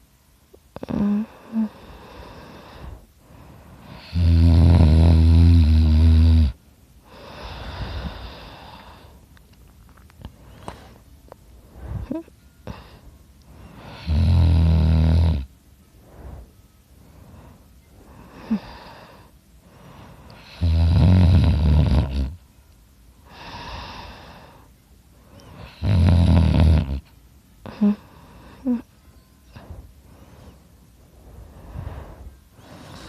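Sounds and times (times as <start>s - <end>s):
quiet breathing: 0.0s - 26.0s, 26.9s - 33.0s
person snoring loudly: 0.8s - 3.0s, 3.8s - 9.0s, 13.7s - 15.5s, 20.4s - 22.4s, 25.6s - 27.1s.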